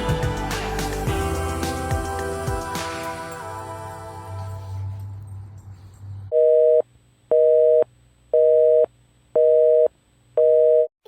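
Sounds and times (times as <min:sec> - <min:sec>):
telephone busy signal: 0:06.3 - 0:10.9.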